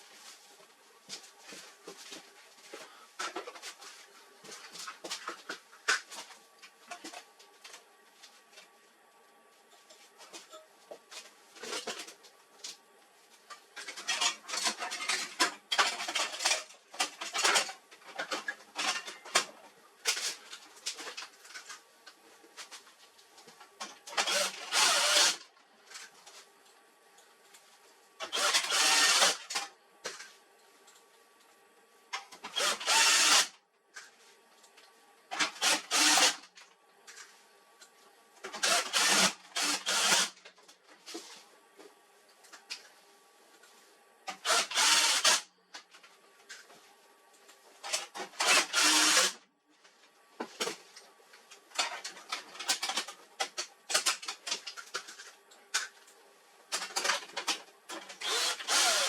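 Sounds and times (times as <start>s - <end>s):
printer parts clicking and rattling: 51.8s - 55.9s, 56.7s - 59.0s.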